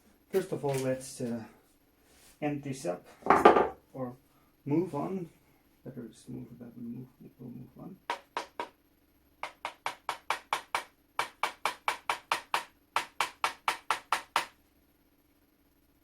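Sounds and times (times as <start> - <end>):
hammer tapping on punch: 8.1 - 8.8, 9.4 - 14.6.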